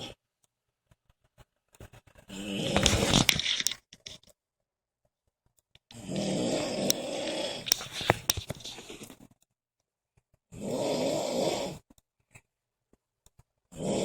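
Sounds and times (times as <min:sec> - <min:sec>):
heavy snoring with crackles: 0:02.3 - 0:03.3, 0:05.9 - 0:09.2, 0:10.5 - 0:11.9, 0:13.7 - 0:14.0.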